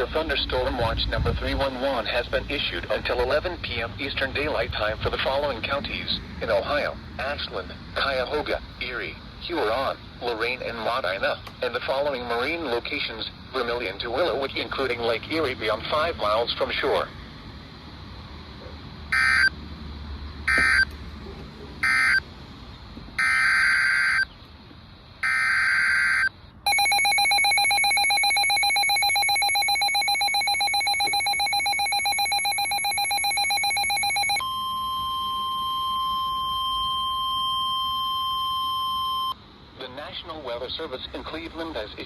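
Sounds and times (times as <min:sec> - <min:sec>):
steady warning tone: 0:19.1 - 0:19.6, 0:20.5 - 0:20.9, 0:21.8 - 0:22.2, 0:23.2 - 0:24.3, 0:25.2 - 0:39.4
screechy two-tone data warbles: 0:19.2 - 0:19.5, 0:20.5 - 0:20.9, 0:21.8 - 0:22.2, 0:23.2 - 0:24.3, 0:25.2 - 0:34.6
rapidly pulsing electronic alert tone: 0:21.8 - 0:22.2, 0:25.2 - 0:34.6.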